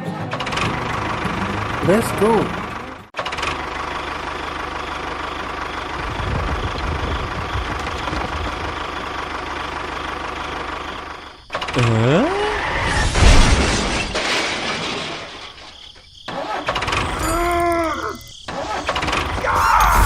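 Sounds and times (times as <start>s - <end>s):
small engine running: 0.2s - 11.8s.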